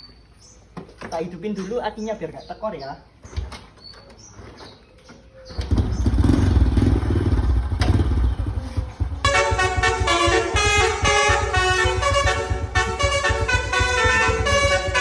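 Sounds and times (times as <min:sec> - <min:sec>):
motorcycle engine rumbling: 0:00.8 - 0:15.0
multi-tone horn melody: 0:09.1 - 0:15.0.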